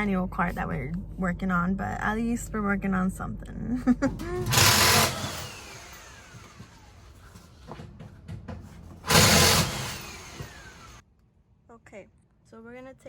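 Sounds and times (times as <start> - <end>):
impact wrench bursts: 4.3 - 7.2, 9.0 - 11.0.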